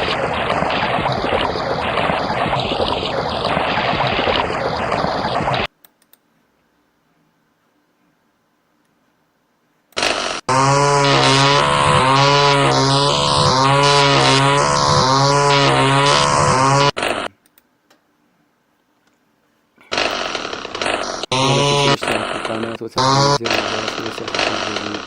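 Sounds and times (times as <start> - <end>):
loud electronic buzzing: 0.0 - 5.7, 10.0 - 17.3, 19.9 - 25.0.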